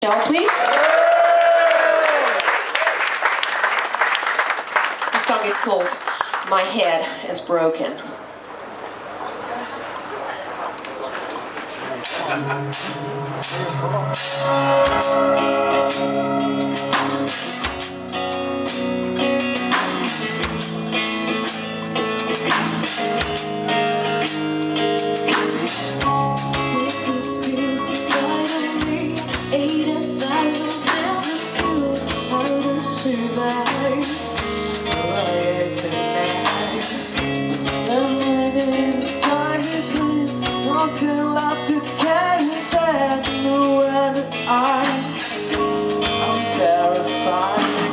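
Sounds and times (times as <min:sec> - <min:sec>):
guitar: 0:11.6 - 0:47.9
drum kit: 0:12.0 - 0:47.9.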